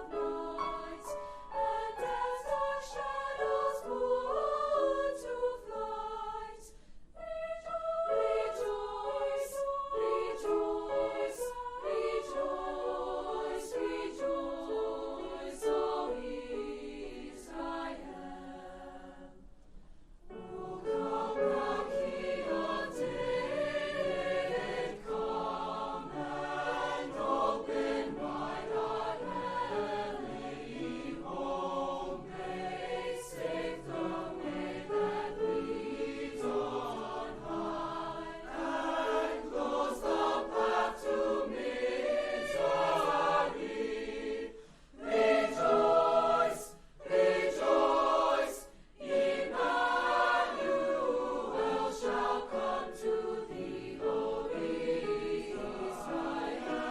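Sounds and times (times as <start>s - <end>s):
choir singing in harmony: 0.0s - 19.6s, 20.2s - 56.9s.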